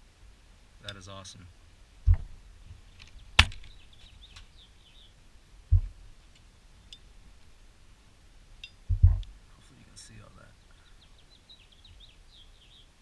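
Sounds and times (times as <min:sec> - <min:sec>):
dull thump: 0:02.0 - 0:02.4, 0:05.7 - 0:06.0, 0:08.9 - 0:09.3
faint chirping: 0:02.8 - 0:05.2, 0:08.6 - 0:13.0.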